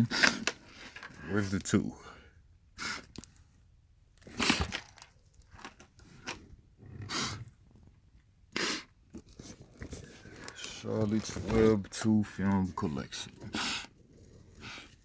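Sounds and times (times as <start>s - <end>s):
plastic cases clattering: 4.5s - 6.0s, 9.2s - 12.0s.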